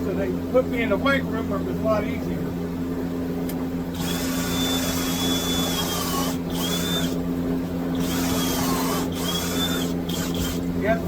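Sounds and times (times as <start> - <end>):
steady low hum: 0.0 - 11.0
power drill whining: 3.9 - 7.2, 7.9 - 10.7.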